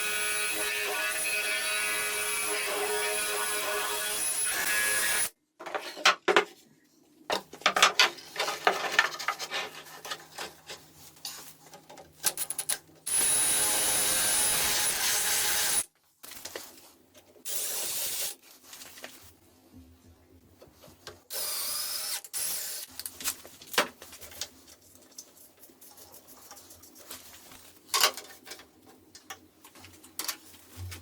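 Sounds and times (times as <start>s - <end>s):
power tool on wood: 13.1s - 15.8s.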